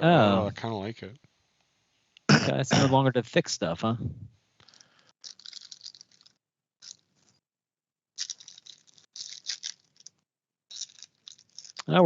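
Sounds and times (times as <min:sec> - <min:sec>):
foil pack tearing and crinkling: 0:08.2 - 0:09.9.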